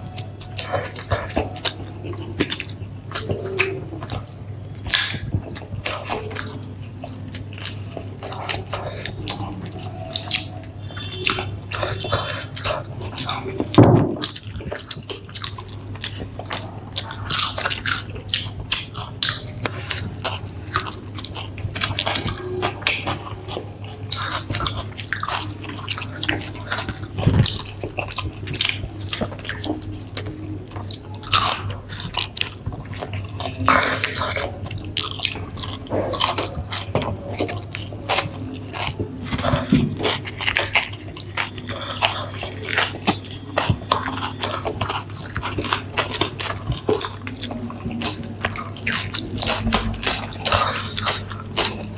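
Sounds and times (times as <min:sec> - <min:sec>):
steady low hum: 0:00.0 - 0:51.9
wet chewing: 0:00.0 - 0:51.9
crunchy bites: 0:14.2 - 0:51.9.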